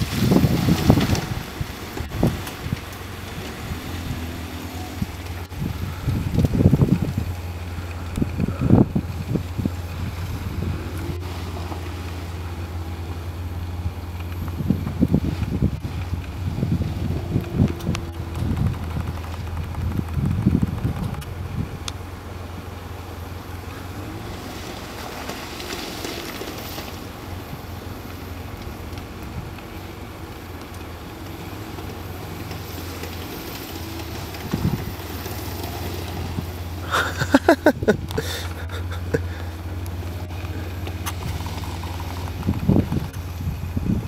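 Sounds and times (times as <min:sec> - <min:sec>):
wind on microphone: 0:00.0 - 0:12.5, 0:13.4 - 0:21.9, 0:34.2 - 0:35.2, 0:40.6 - 0:44.0
engine running at low revs: 0:00.0 - 0:44.0.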